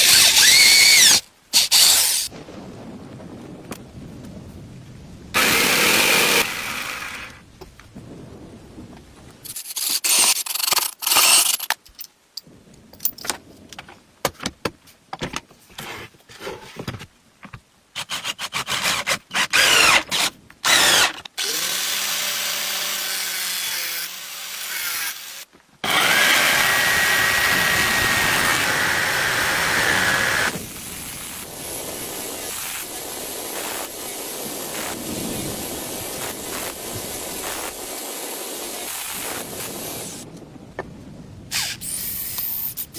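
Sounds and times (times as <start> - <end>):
power tools running: 5.4 - 7.4, 19.6 - 30.8.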